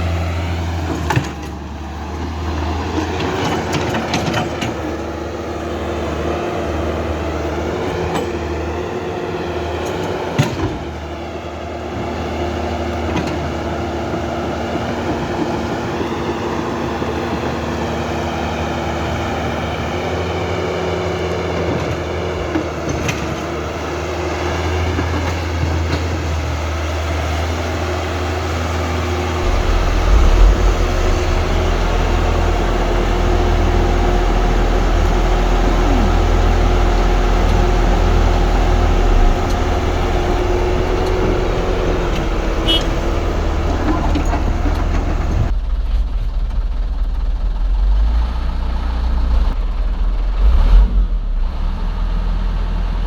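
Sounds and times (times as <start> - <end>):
deep rumble: 29.0 - 51.6.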